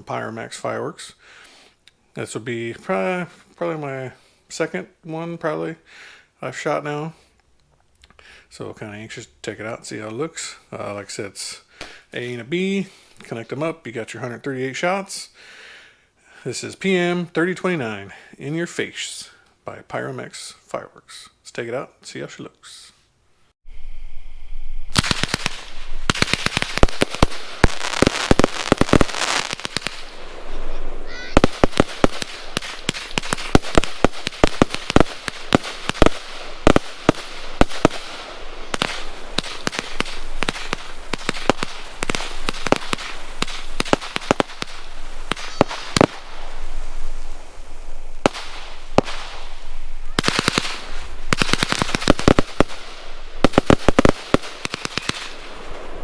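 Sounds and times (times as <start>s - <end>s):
firework launch thumps and bursts: 24.9s - 55.8s.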